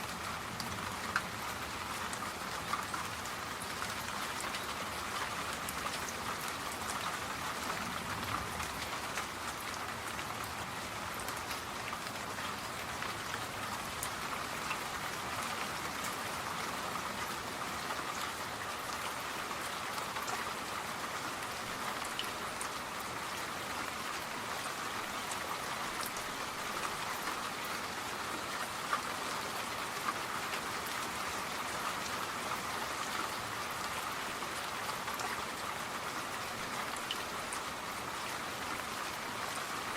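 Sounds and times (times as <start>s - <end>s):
steady rain patter: 0.0s - 39.9s.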